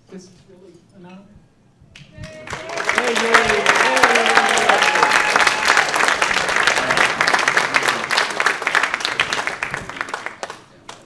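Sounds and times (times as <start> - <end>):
audience applauding: 2.2 - 11.0.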